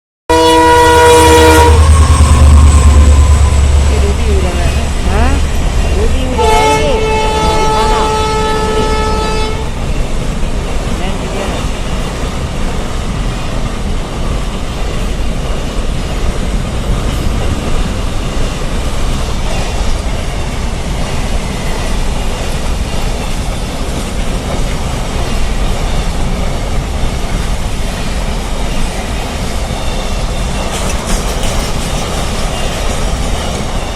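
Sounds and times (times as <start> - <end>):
train wheels rushing on rails: 0.3 - 33.9.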